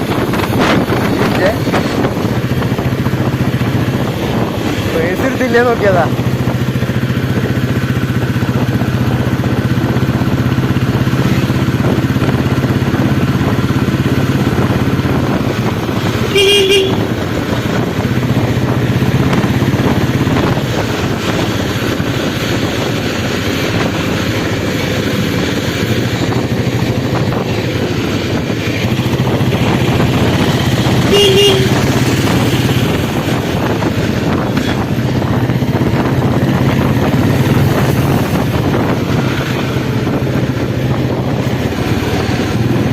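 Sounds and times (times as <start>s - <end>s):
motorcycle engine running: 0.0s - 42.9s
horn toots: 16.2s - 17.3s, 30.9s - 33.0s.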